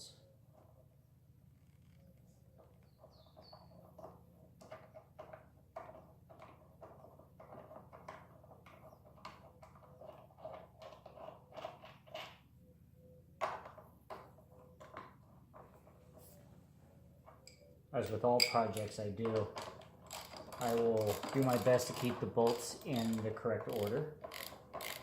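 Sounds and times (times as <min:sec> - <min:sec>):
bird-like chirp: 0:02.7 - 0:03.8, 0:12.6 - 0:13.4
ratchet clicking: 0:20.1 - 0:25.0.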